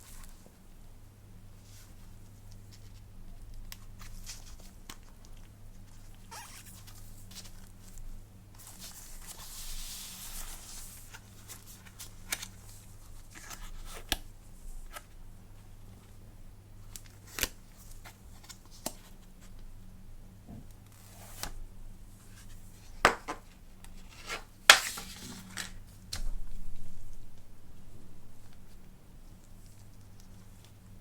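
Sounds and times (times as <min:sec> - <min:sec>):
steady low hum: 0:14.3 - 0:31.0.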